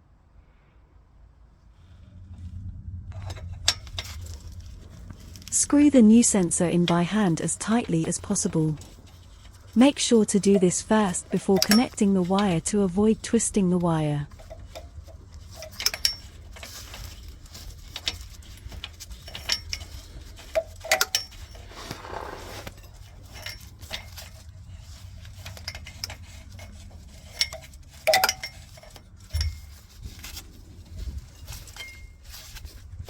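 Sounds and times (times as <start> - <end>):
metallic clinks of hand tools: 27.3 - 29.8.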